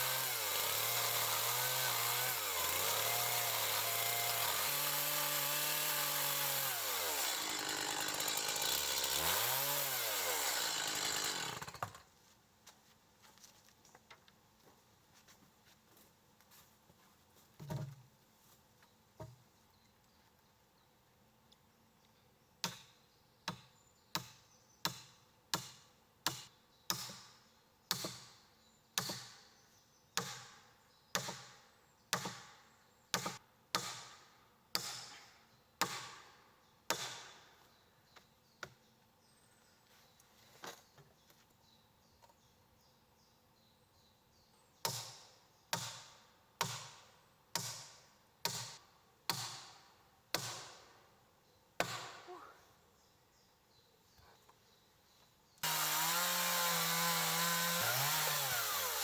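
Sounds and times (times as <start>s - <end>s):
sharp blows on wood: 33.1s - 36.2s, 36.9s - 37.4s, 44.8s - 50.9s, 51.8s - 52.4s.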